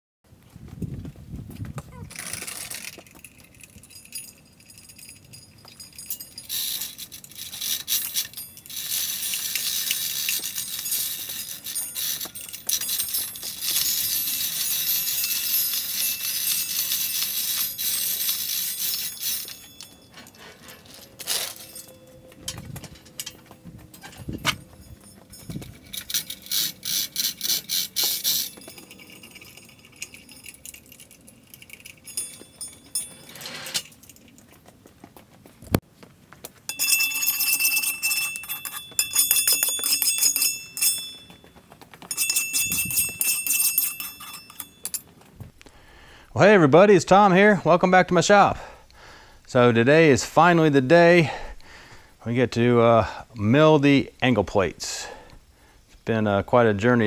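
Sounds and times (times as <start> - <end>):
metal chips rattling: 2.1 - 34.4, 36.7 - 45.2.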